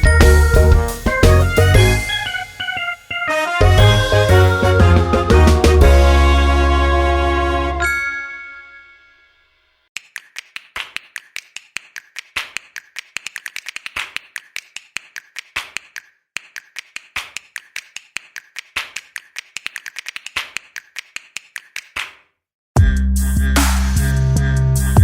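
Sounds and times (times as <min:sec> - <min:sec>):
rapid clicking and tapping: 0:10.0 - 0:22.1.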